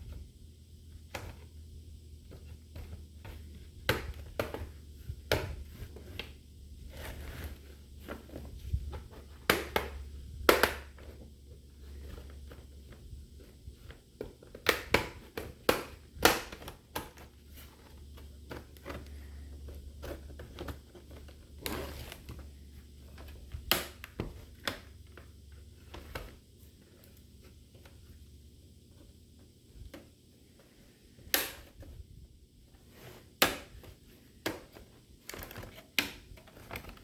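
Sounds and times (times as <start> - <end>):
low steady hum: 0.0 - 37.0
plastic case clicks and cracks: 9.4 - 11.2.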